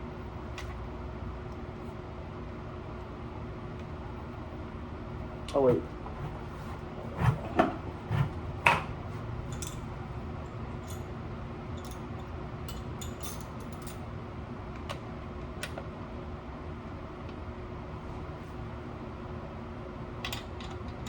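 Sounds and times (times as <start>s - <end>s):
steady low hum: 0.0s - 21.0s
metal tools clinking: 9.5s - 9.9s.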